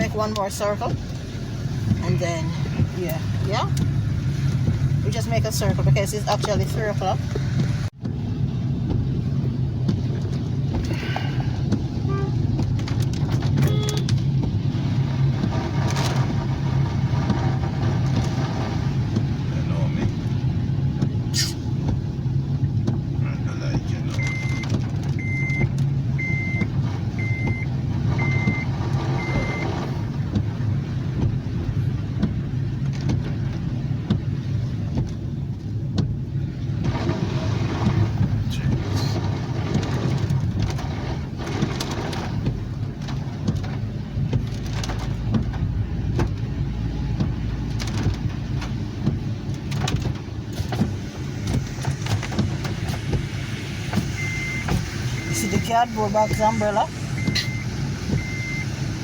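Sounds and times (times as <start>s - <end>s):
car road and engine rumble: 0.0s - 59.0s
short electronic beeps: 24.2s - 26.6s, 27.2s - 29.8s, 54.2s - 58.7s.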